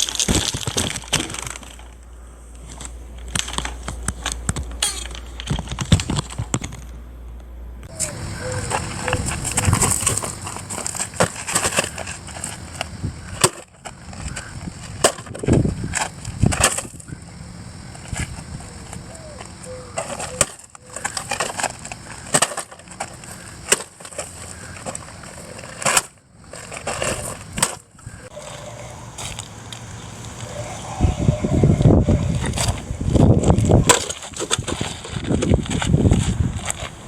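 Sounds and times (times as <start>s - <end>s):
rough rolling noise: 0.0s - 37.0s
knocks clicks and clatter: 2.7s - 17.0s.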